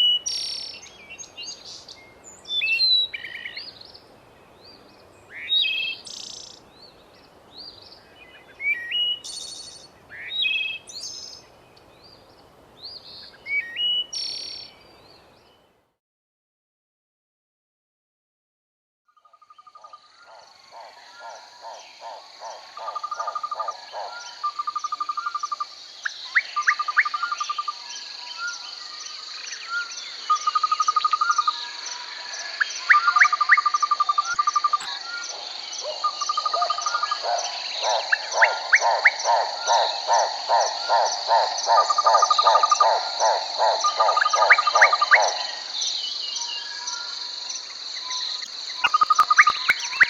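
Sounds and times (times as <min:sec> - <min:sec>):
frogs calling: 0:19.2 - 0:50.0
high insect drone: 0:39.2 - 0:50.0
low frog croaks: 0:48.4 - 0:50.0.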